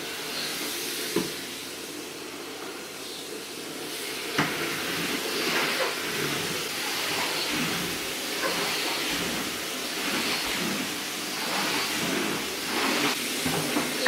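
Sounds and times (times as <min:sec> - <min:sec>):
steady rushing hiss: 0:00.0 - 0:14.0.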